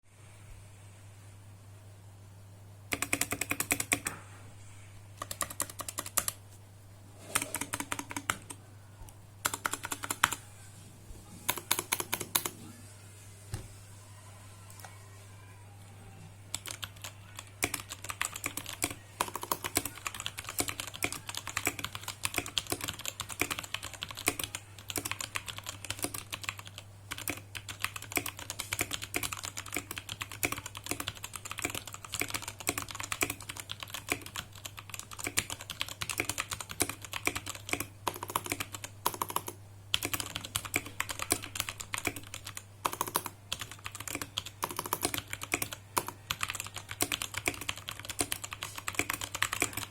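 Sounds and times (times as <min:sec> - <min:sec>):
mechanical keyboard keys clacking: 0:02.9 - 0:04.1, 0:05.2 - 0:06.4, 0:09.4 - 0:10.4, 0:11.5 - 0:12.5, 0:16.5 - 0:49.9.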